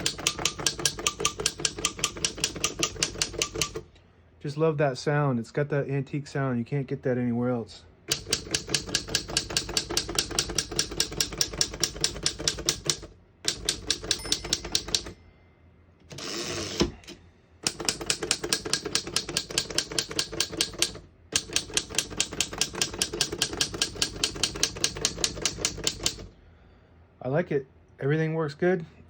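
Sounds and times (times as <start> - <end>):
typewriter key strikes: 0.0 - 3.8, 8.1 - 15.2, 17.6 - 26.3.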